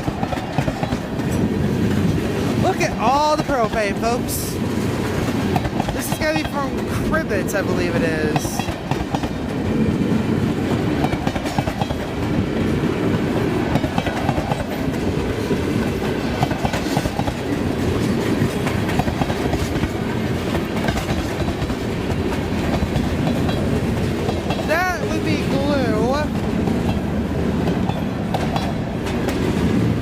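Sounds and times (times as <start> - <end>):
train wheels clacking over rail joints: 0.0 - 30.0.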